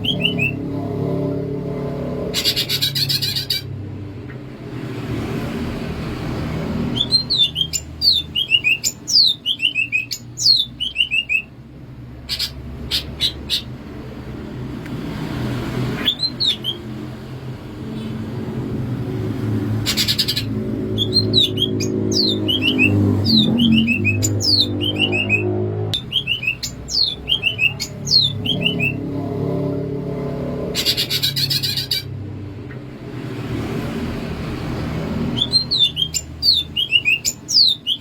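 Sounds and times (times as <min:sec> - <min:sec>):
bird whistling song: 0:00.0 - 0:00.7, 0:02.3 - 0:03.7, 0:06.9 - 0:11.5, 0:16.0 - 0:16.9, 0:19.9 - 0:29.0, 0:30.8 - 0:32.1, 0:35.3 - 0:38.0
low rumble: 0:00.0 - 0:02.5, 0:26.8 - 0:31.3.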